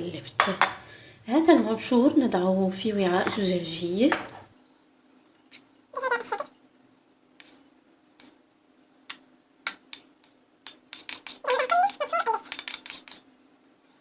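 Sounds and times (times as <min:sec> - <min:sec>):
utensil clinking on glass bowl: 0:10.7 - 0:13.2.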